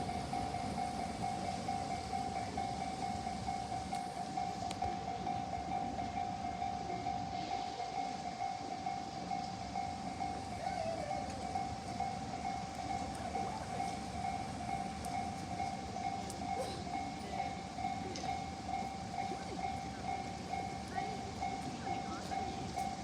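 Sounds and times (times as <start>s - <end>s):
level crossing warning bell: 0.0s - 23.0s
train rumbling past: 0.0s - 23.0s.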